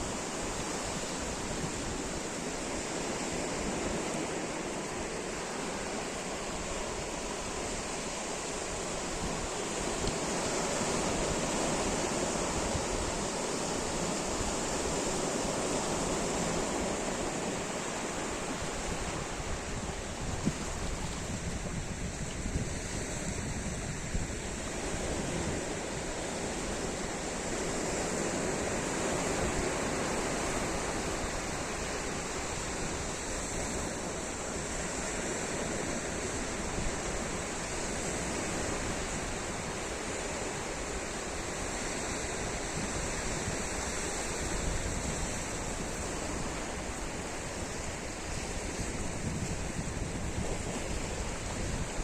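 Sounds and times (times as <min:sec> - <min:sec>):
sea surf washing onto beach: 0:00.0 - 0:52.0
wind noise on microphone: 0:00.0 - 0:52.0.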